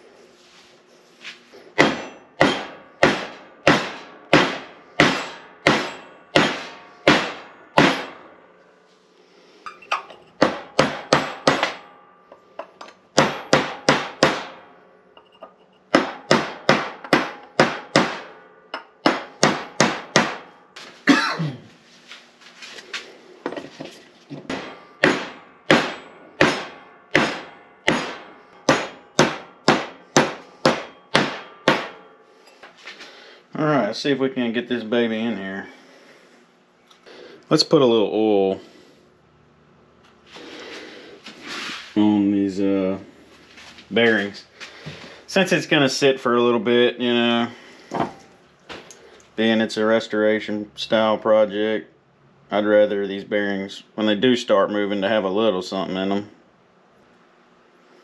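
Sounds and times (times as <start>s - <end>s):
hammer blows on metal part: 24.5s - 32.2s.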